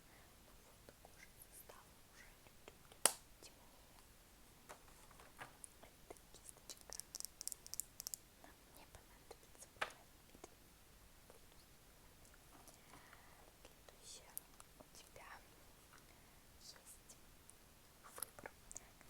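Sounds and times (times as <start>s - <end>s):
close-miked clicks and taps: 4.7s - 8.2s.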